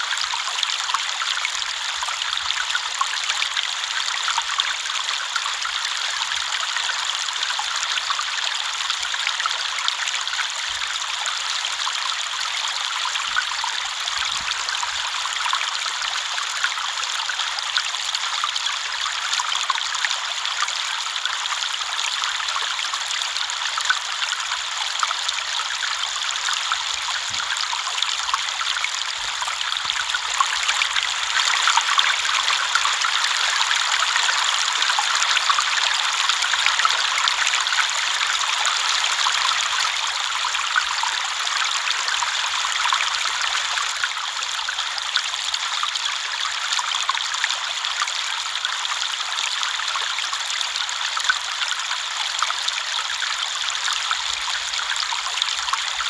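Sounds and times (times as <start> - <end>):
river water flowing: 0.0 - 56.0.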